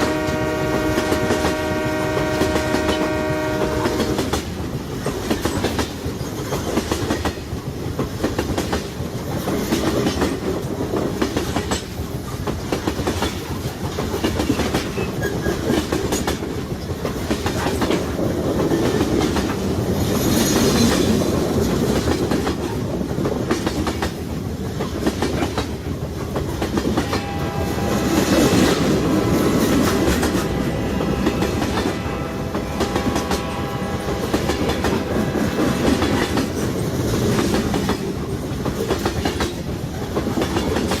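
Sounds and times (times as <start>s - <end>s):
freight train rumbling past: 0.0s - 41.0s
wheels clacking over rail joints: 3.8s - 41.0s
steady tones: 27.0s - 37.2s.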